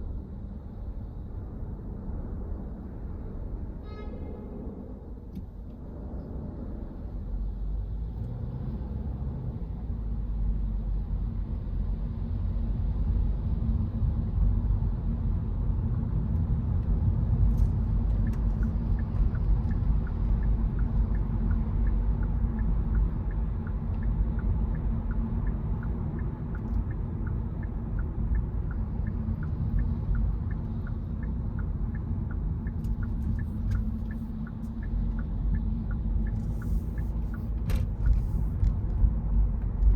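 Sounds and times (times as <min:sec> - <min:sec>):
tyres and engine rumble: 0:00.0 - 0:39.9.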